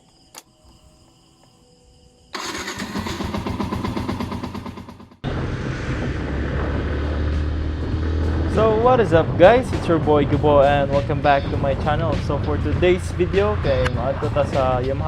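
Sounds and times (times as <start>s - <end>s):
faint insect chirring: 0.0s - 2.4s
motorcycle engine running: 2.4s - 15.0s.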